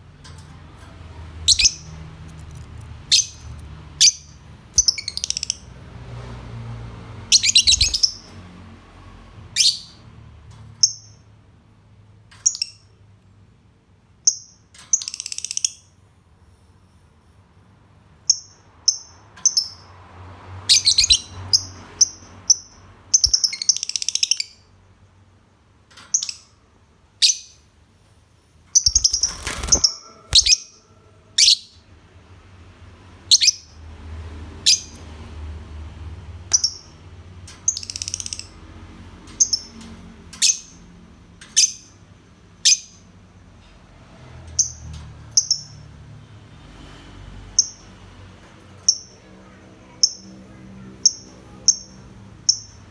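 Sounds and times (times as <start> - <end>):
lovebird chirping: 1.5 - 1.9, 3.0 - 5.6, 7.3 - 8.3, 20.7 - 24.6, 28.7 - 31.8.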